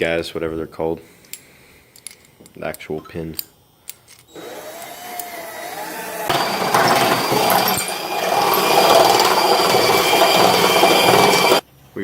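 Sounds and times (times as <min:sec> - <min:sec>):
power drill grinding into metal: 0:04.3 - 0:11.6.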